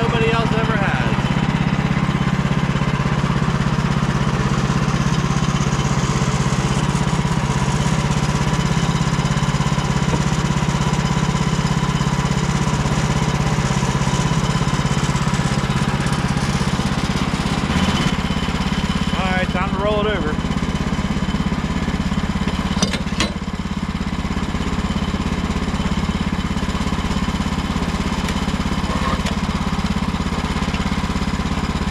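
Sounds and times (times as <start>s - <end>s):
sawmill gas engine running: 0.0s - 31.9s.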